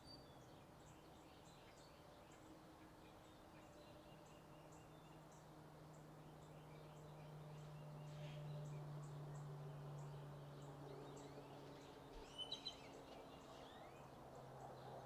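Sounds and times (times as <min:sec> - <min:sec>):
bird chirps: 0:06.4 - 0:14.1.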